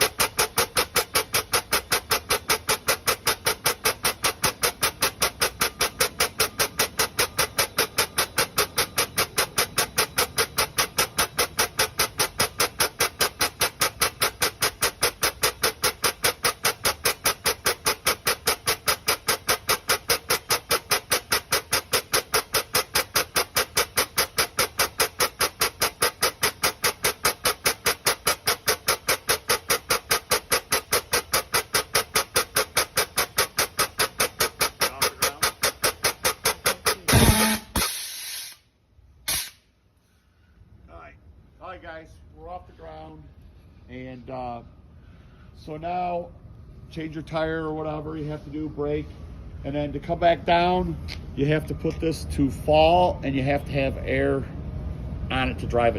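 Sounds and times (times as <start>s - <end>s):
air pump stroking rhythmically: 0.0s - 39.6s.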